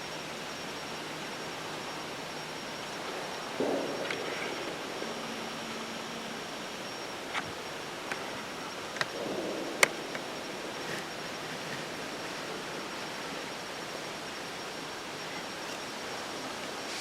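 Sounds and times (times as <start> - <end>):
outdoor background hiss: 0.0 - 17.0
sharp clicks: 3.0 - 11.9.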